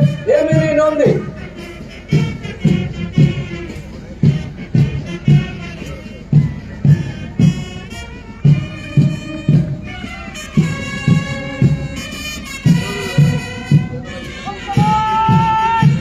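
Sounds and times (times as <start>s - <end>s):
wind instruments melody: 0.0s - 16.0s
bass drum beating: 6.3s - 16.0s.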